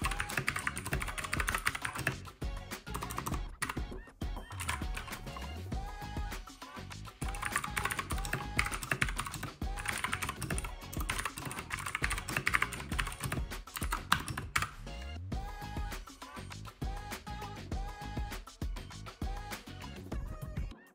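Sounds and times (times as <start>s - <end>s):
mechanical keyboard typing: 0.0s - 2.2s, 2.9s - 3.8s, 4.6s - 5.3s, 7.2s - 14.8s
background music: 0.0s - 20.9s.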